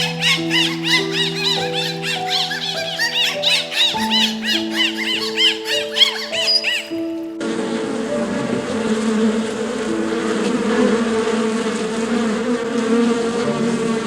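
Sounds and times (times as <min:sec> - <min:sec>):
insect swarm buzzing: 0:00.0 - 0:14.0.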